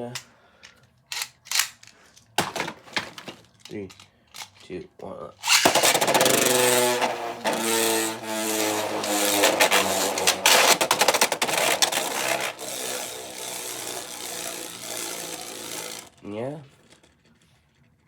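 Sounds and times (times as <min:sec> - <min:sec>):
top rattling and scraping plastic: 0:02.4 - 0:04.0, 0:05.4 - 0:17.9
spinning top whirring: 0:05.4 - 0:17.4.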